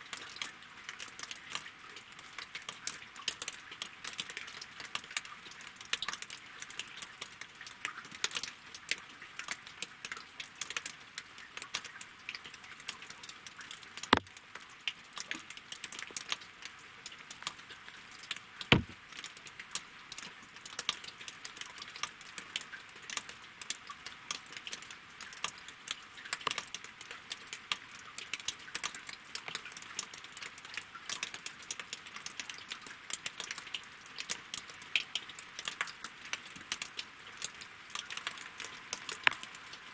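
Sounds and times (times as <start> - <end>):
rain pattering on water: 0.0 - 39.9
sharp water drops: 14.1 - 14.4, 18.7 - 19.0.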